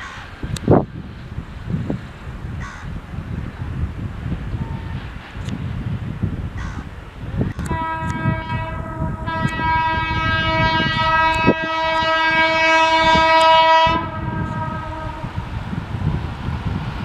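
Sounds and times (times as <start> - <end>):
train rumbling on rails: 0.0 - 17.0
locomotive horn blast: 7.6 - 15.4.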